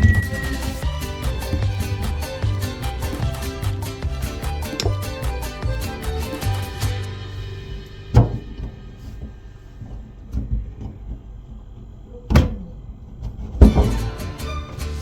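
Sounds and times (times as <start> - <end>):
sharp knocks and clunks: 12.3 - 14.1.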